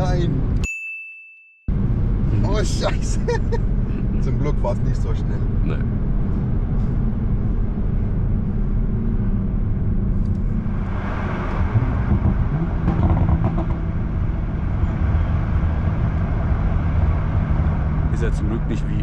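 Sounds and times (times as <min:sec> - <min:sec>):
car engine from inside: 0:01.7 - 0:19.0
tyre noise: 0:11.5 - 0:13.9.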